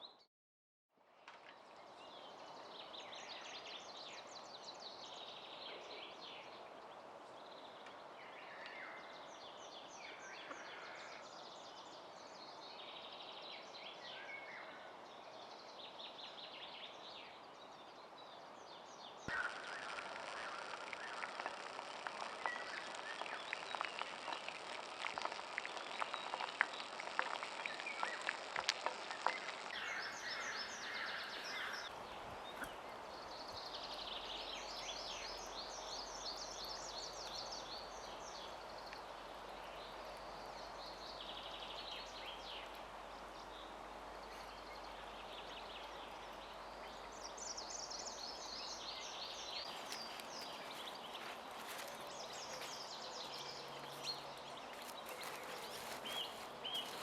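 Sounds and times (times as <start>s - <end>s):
soft steady hiss: 1.1s - 57.0s
small birds chirping: 15.2s - 57.0s
sharp clicks and crackles: 19.3s - 30.8s.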